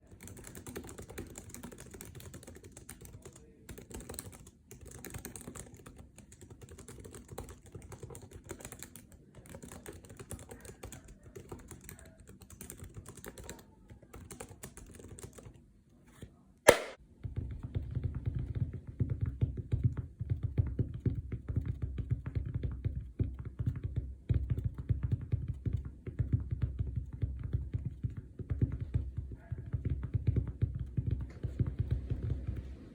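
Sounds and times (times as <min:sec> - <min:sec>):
fast typing on keyboards: 0:00.0 - 0:15.6, 0:17.5 - 0:32.8
sharp knock: 0:16.7 - 0:17.0.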